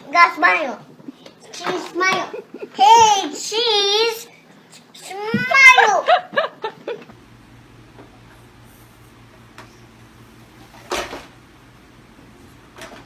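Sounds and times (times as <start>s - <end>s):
small child crying: 5.0s - 6.2s
low steady hum: 7.0s - 13.0s.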